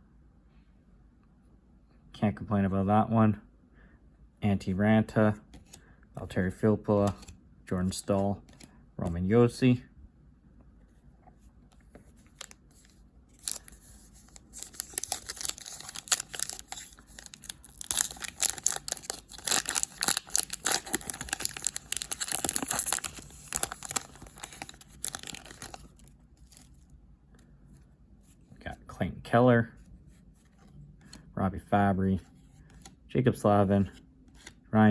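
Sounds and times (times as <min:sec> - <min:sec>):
wrapper being torn and crinkled: 0:12.3 - 0:26.8.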